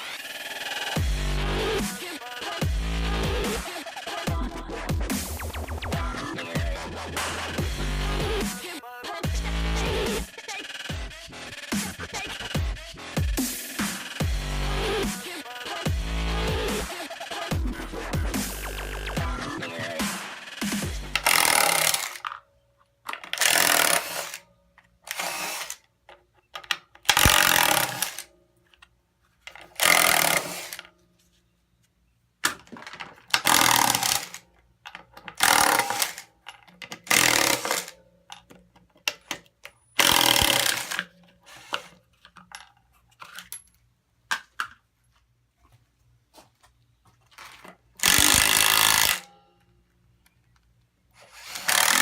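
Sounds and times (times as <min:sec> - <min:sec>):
impact driver running in bursts: 0:12.1 - 0:22.2, 0:23.3 - 0:24.4, 0:25.1 - 0:25.8, 0:27.1 - 0:28.2, 0:29.8 - 0:30.8, 0:33.4 - 0:34.4, 0:35.4 - 0:36.3, 0:37.1 - 0:37.9, 0:40.0 - 0:41.0, 0:48.0 - 0:49.3, 0:51.2 - 0:52.0.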